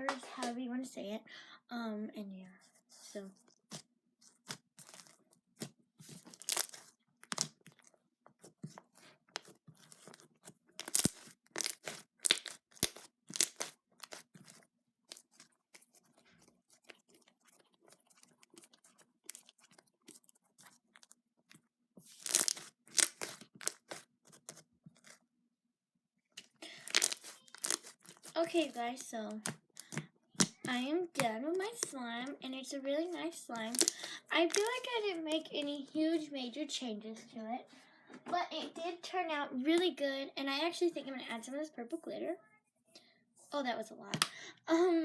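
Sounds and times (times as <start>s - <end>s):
slime clicking and popping: 6.3s - 7.7s, 10.8s - 14.2s, 22.2s - 24.0s, 26.7s - 28.2s, 33.6s - 34.8s.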